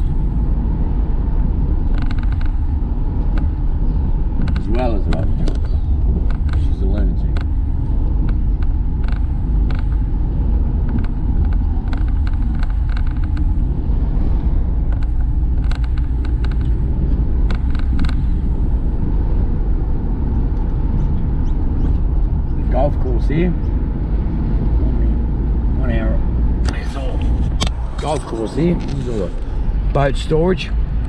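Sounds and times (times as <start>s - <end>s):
road and engine rumble: 0.0s - 31.0s
light clicks and rattles: 1.9s - 3.5s, 4.4s - 10.0s, 10.8s - 13.7s, 14.9s - 18.6s.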